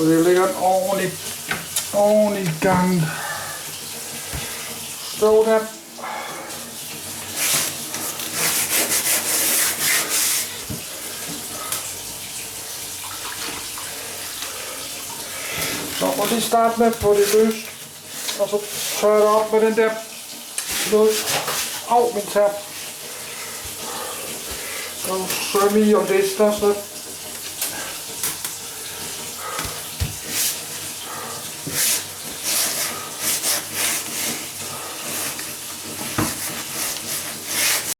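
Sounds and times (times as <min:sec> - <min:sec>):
water splashing and pouring: 0:00.0 - 0:37.9
cloth scrubbing a floor: 0:07.0 - 0:11.4, 0:15.4 - 0:19.8, 0:20.6 - 0:26.9, 0:28.7 - 0:37.9.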